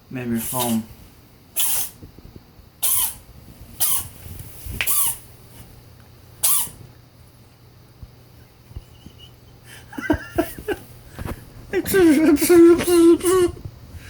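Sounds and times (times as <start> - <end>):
cat sneezing: 1.6 - 2.0, 2.8 - 3.2, 3.8 - 4.1, 4.8 - 5.2, 6.4 - 6.8.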